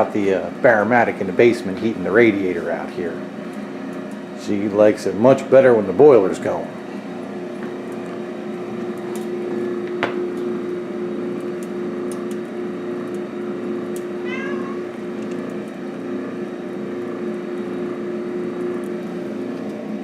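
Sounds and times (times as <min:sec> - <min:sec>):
low machine hum: 0:00.0 - 0:20.0
cat meowing: 0:14.2 - 0:14.9.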